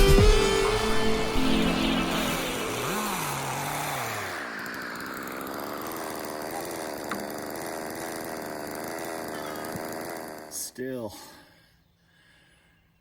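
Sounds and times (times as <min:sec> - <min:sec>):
chainsaw engine idling: 0:01.5 - 0:11.4.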